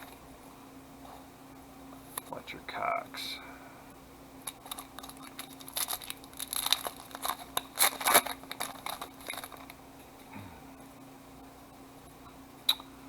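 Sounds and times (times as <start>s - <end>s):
card pack wrapper tearing: 4.4s - 9.8s.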